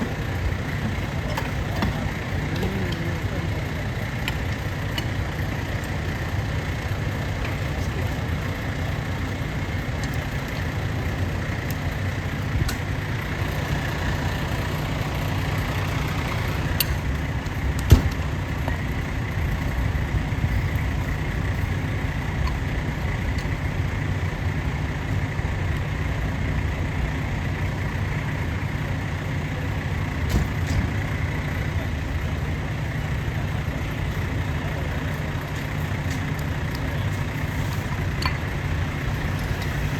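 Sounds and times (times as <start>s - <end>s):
fire truck engine idling: 0.0s - 39.9s.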